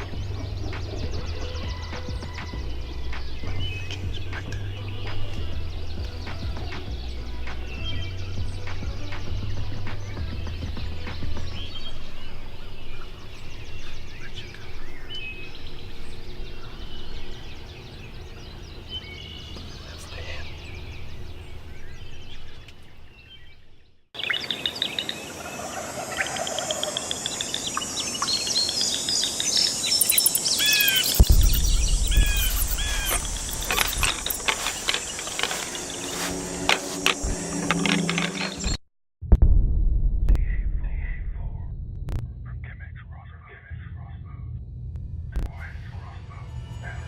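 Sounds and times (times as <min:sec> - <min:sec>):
birds chirping: 0:00.0 - 0:38.8
low thump or rumble: 0:31.2 - 0:34.6, 0:39.2 - 0:43.1, 0:43.7 - 0:45.7.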